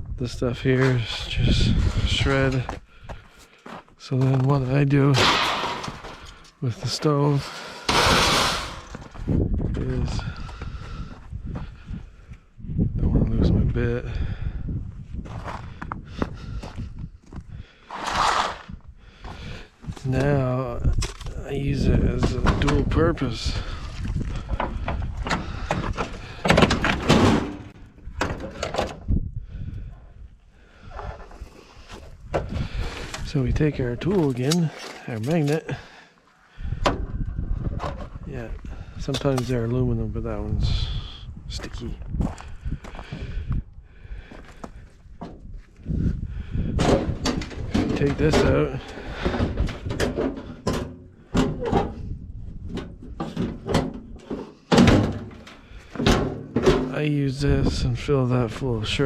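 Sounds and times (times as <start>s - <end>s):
sheet metal clanking and rattling: 5.1s - 6.3s, 7.3s - 9.1s, 24.5s - 29.0s, 46.8s - 52.1s, 52.7s - 57.1s
sheet metal clunks and knocks: 52.8s - 57.0s.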